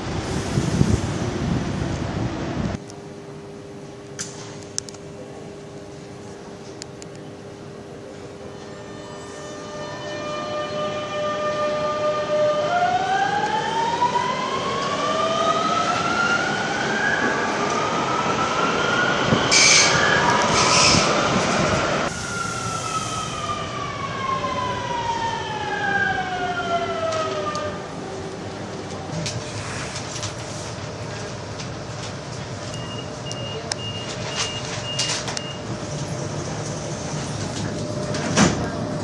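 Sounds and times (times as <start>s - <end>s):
electric train motor whine: 8.4s - 20.8s.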